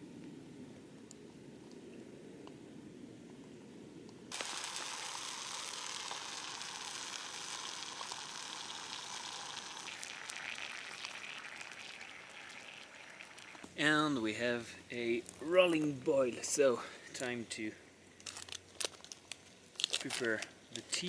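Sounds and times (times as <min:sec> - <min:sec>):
water boiling with bubbling hiss: 0:04.3 - 0:13.9.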